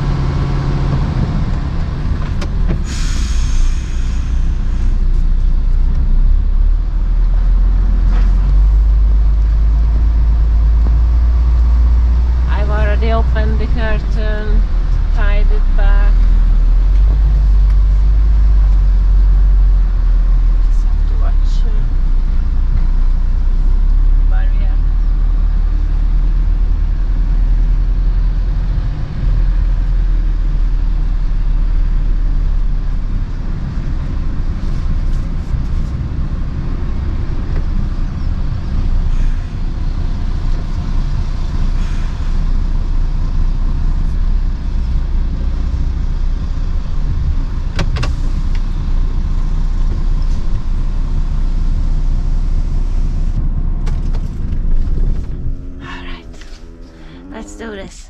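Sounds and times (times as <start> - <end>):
diesel engine rumbling: 0.0 - 58.0.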